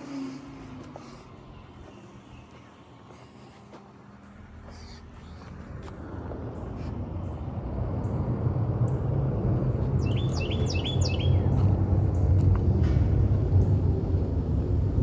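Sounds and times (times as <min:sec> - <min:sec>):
low engine rumble: 0:00.0 - 0:15.0
small bird chirping: 0:10.0 - 0:11.6.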